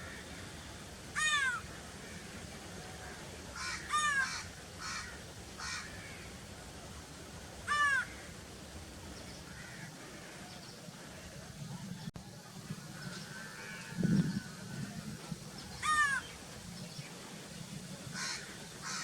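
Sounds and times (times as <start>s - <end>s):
crows cawing: 1.2s - 2.3s, 3.6s - 6.3s, 7.7s - 8.3s, 9.5s - 10.4s, 15.8s - 16.3s, 18.2s - 19.0s.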